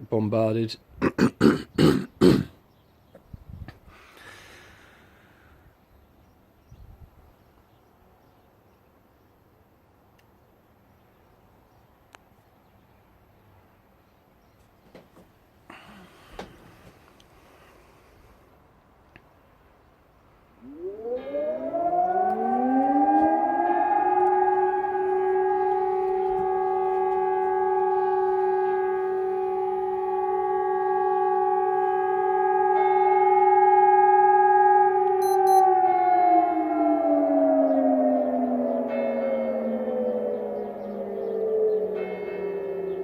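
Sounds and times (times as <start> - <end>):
air raid siren wailing: 15.7 - 17.8, 20.6 - 43.0.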